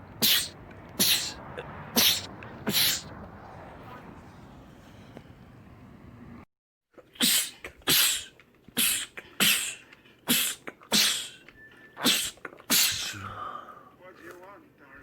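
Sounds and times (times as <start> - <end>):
man sneezing: 0.2 - 1.4, 2.0 - 3.1, 7.2 - 11.4, 12.0 - 13.4.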